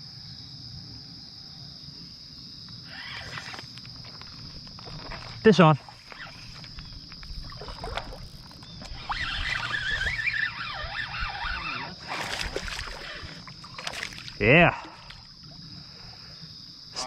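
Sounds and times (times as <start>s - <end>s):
water splashing and sloshing: 3.0s - 16.3s
wavering whistle-like sound: 8.9s - 12.0s.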